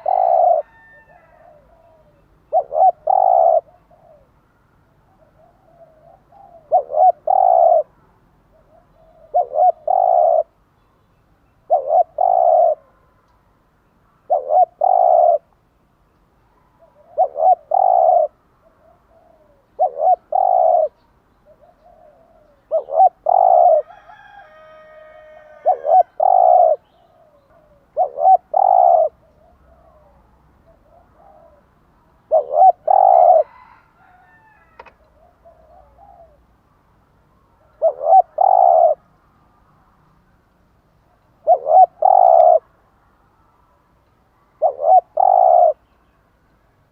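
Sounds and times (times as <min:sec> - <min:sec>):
dove cooing: 0:00.0 - 0:04.4, 0:05.0 - 0:07.9, 0:08.5 - 0:10.6, 0:11.6 - 0:13.0, 0:14.3 - 0:15.5, 0:16.6 - 0:36.5, 0:37.6 - 0:39.0, 0:41.1 - 0:42.7, 0:44.6 - 0:45.9.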